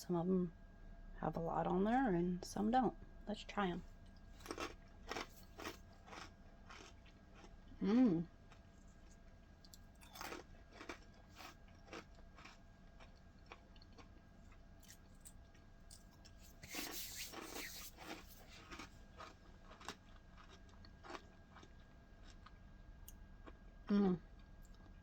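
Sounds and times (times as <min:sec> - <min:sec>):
dry cereal crunching and chewing: 0:04.1 - 0:07.8, 0:08.5 - 0:22.7.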